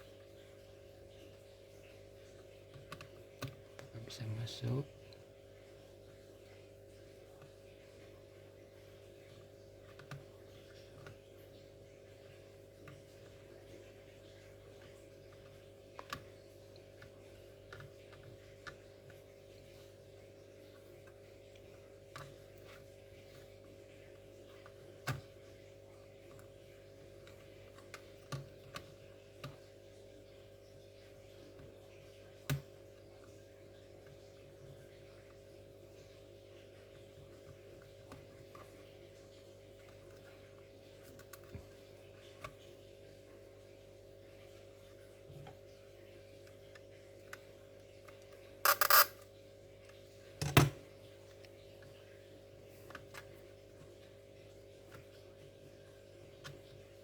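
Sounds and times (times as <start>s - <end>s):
small hard parts clicking: 48.6s - 49.2s.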